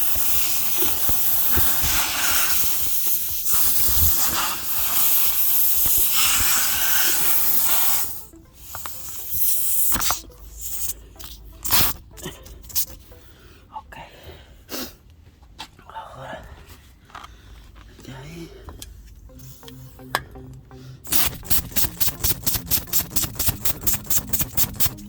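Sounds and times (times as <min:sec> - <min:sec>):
air hissing from a tire: 0:00.0 - 0:12.0.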